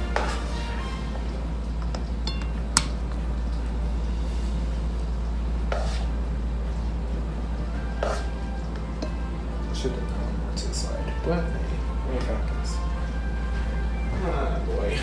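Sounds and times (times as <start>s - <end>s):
steady low hum: 0.0s - 15.0s
utensils clinking against pot: 1.8s - 3.1s.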